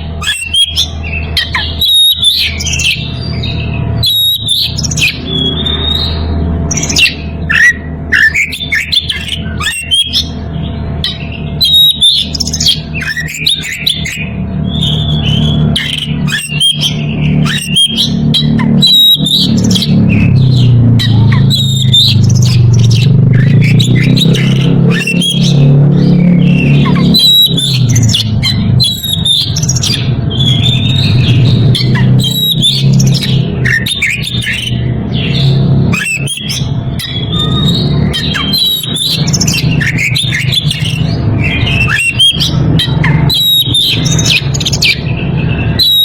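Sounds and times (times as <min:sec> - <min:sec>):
bird singing whistles and chirps: 0:00.0 - 0:46.0.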